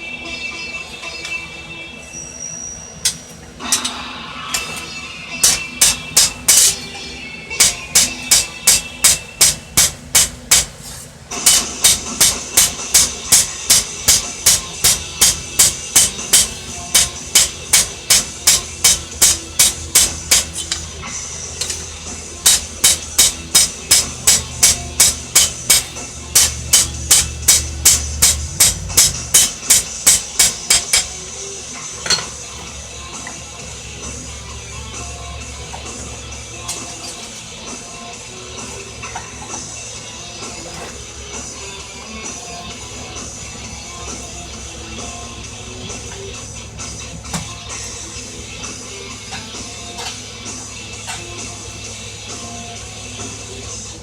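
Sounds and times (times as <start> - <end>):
steady background noise: 0.0 - 54.0
hammer striking steel on anvil: 3.0 - 6.9, 7.6 - 20.9, 21.6 - 31.2, 32.0 - 32.4.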